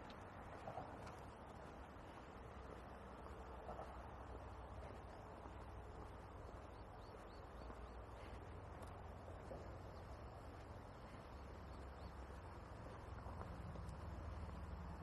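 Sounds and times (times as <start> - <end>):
low rumble and hiss: 0.0 - 15.0
faint high bird chirps: 6.5 - 8.9.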